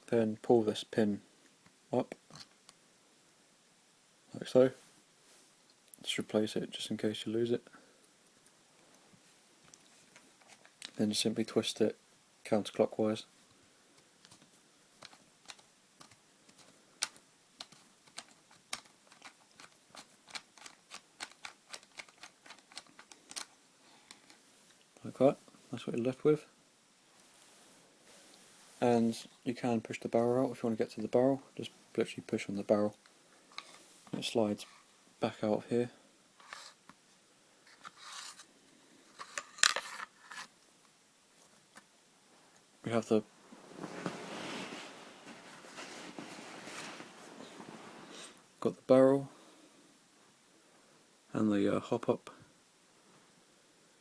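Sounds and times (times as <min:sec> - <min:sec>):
small plastic clicks: 0:15.0 - 0:24.4
barrel scraping as it slides: 0:43.4 - 0:48.4.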